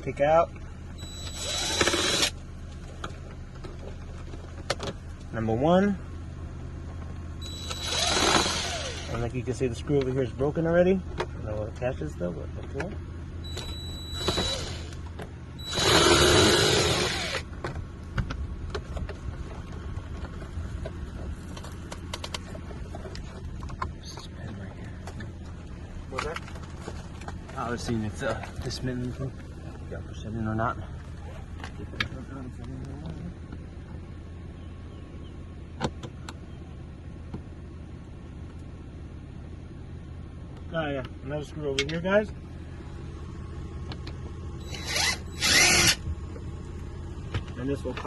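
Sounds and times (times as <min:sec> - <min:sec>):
low hum: 0:00.0 - 0:41.3, 0:42.1 - 0:48.0
electric screwdriver motor running: 0:01.0 - 0:02.4, 0:07.4 - 0:09.2, 0:14.1 - 0:14.9, 0:15.6 - 0:17.4, 0:44.6 - 0:46.0.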